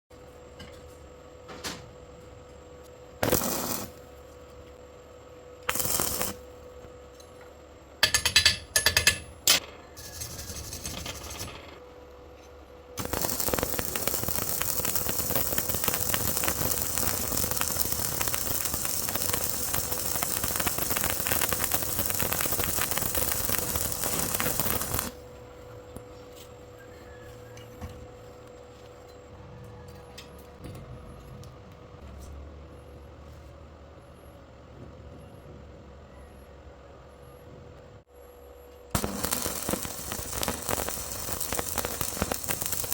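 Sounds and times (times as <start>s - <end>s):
welding arc crackling: 3.2s - 4.0s, 5.6s - 6.5s, 13.0s - 25.2s, 38.9s - 42.9s.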